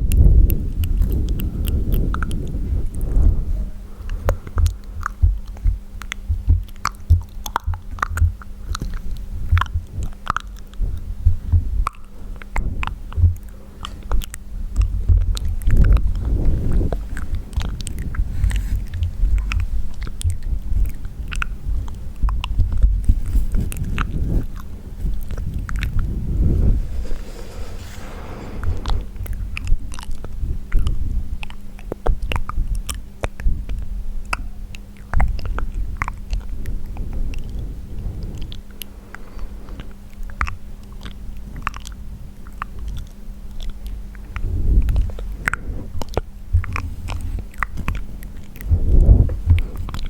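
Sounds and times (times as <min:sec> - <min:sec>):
wet mouth smacks and clicks: 0:00.0 - 0:03.2, 0:04.1 - 0:26.1, 0:28.9 - 0:37.6, 0:38.4 - 0:50.0
soft low thuds: 0:02.6 - 0:10.2, 0:10.8 - 0:13.5, 0:44.4 - 0:50.0.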